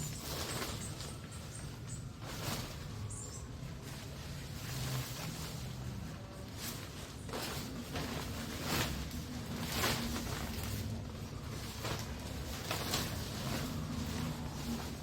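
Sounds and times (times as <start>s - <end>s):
tent fabric rustling: 0.0s - 15.0s.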